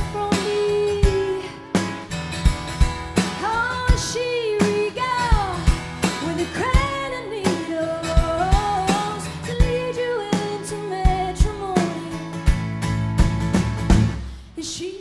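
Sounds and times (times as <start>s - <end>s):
woman singing: 0.0s - 1.9s, 3.3s - 12.4s, 14.5s - 15.0s
drum kit beat: 0.0s - 14.4s
guitar: 0.0s - 15.0s.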